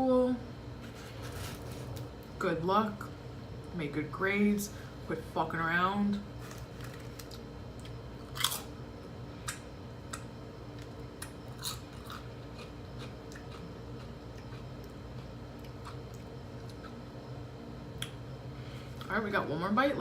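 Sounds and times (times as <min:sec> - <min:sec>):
steady low hum: 0:00.0 - 0:20.0
person chewing: 0:06.9 - 0:08.7, 0:10.8 - 0:17.0.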